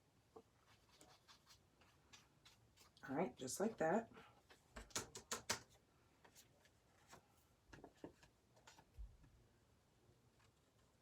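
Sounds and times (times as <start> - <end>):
brush scratching on paper card: 0.6 - 3.0.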